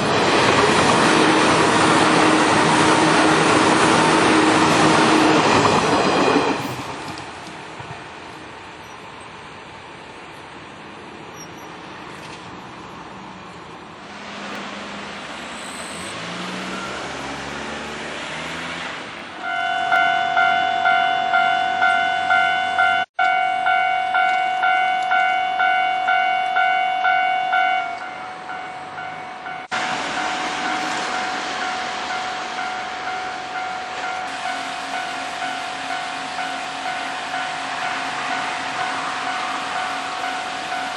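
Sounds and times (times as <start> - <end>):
electric train running noise: 0.0 - 22.9, 23.8 - 40.9
level crossing warning bell: 14.8 - 18.0, 19.4 - 40.9.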